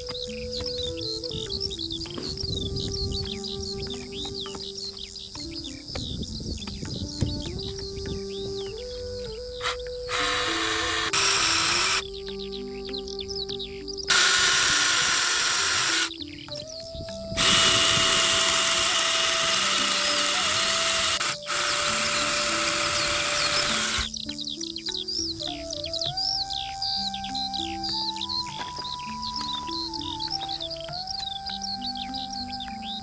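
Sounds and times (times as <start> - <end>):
power tool hissing: 9.6 - 12.1, 14.1 - 16.1, 17.4 - 24.1.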